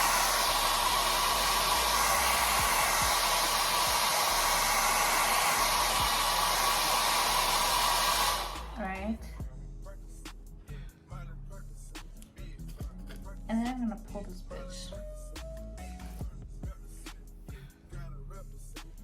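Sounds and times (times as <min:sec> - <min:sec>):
hair dryer blowing: 0:00.0 - 0:09.2.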